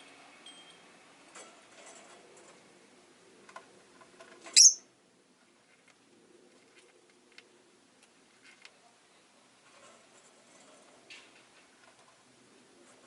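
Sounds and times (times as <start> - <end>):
lovebird chirp: 4.5 - 4.9.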